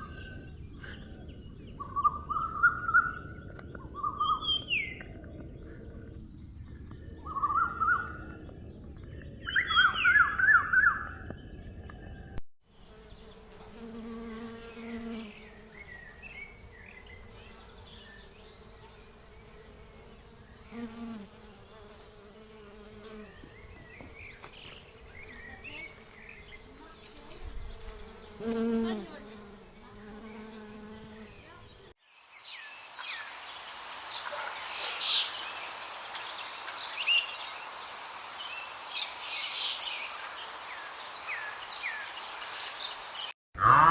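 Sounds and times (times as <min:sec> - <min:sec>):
bird calls: 0:00.0 - 0:06.1, 0:06.8 - 0:08.5, 0:09.1 - 0:11.3, 0:32.4 - 0:43.3
flying insect buzzing: 0:12.8 - 0:23.5, 0:24.7 - 0:31.6, 0:32.3 - 0:43.4.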